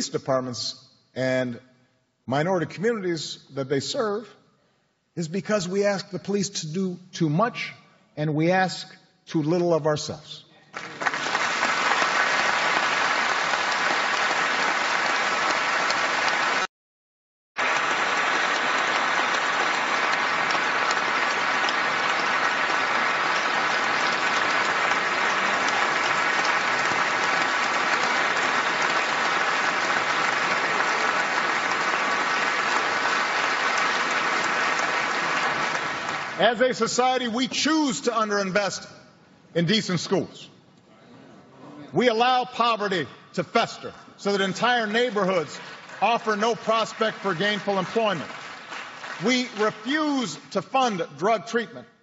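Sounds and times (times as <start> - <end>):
audience applauding: 10.7 - 16.7, 17.6 - 36.6, 44.3 - 50.9.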